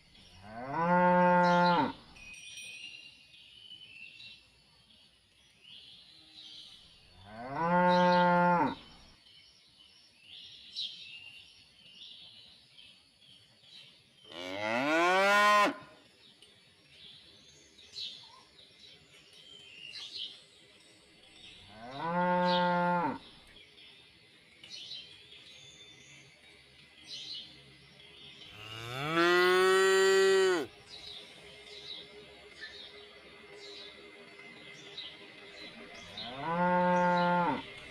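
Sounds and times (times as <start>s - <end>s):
cattle mooing: 28.6s - 30.7s.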